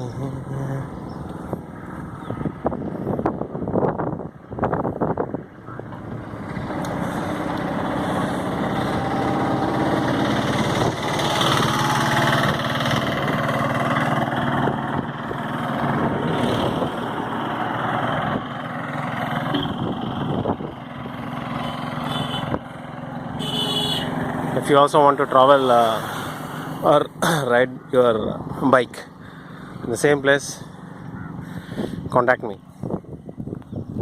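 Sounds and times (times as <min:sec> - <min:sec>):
small engine running: 0:06.4 - 0:17.4.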